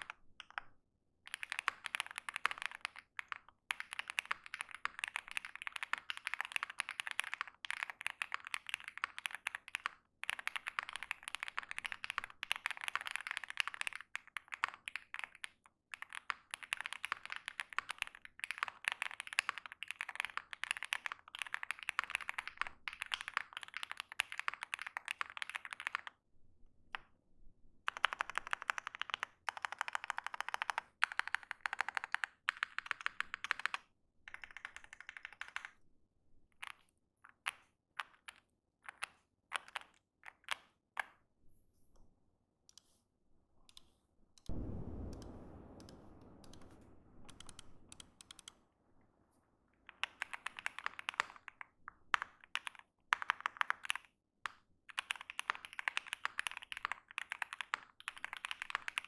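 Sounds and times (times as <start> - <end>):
mechanical keyboard typing: 1.3 - 26.2, 27.9 - 35.8, 49.9 - 51.6, 52.2 - 54.1, 54.9 - 59.0
low thud: 44.5 - 49.5.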